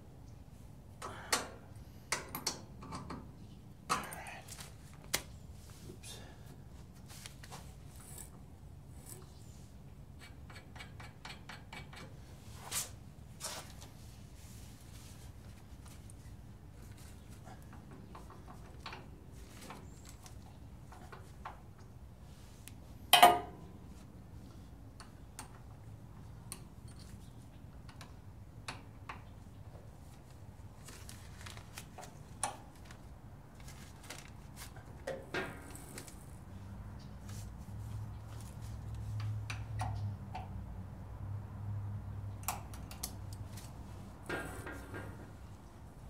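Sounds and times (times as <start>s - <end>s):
sharp metal clank: 23.2s - 23.6s.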